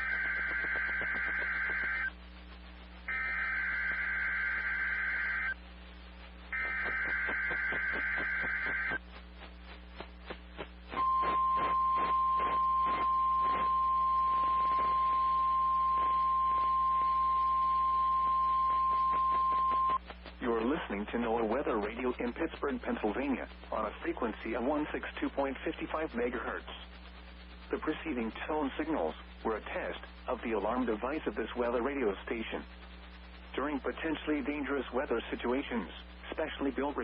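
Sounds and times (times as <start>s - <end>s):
buzzy data screech: 0.0s - 2.2s, 3.1s - 5.6s, 6.5s - 9.1s, 10.6s - 20.0s
steady alarm tone: 0.0s - 2.2s, 3.1s - 5.6s, 6.5s - 9.0s, 11.0s - 20.0s.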